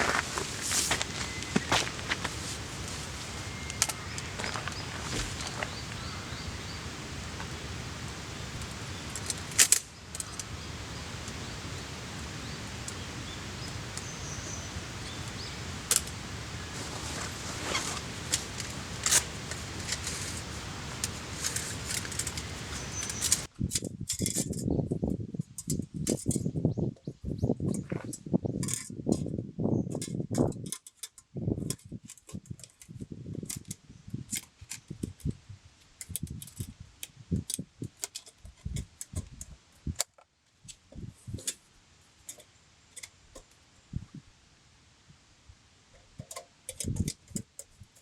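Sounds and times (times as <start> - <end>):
campfire cooking hiss and crackles: 0.0 - 23.5.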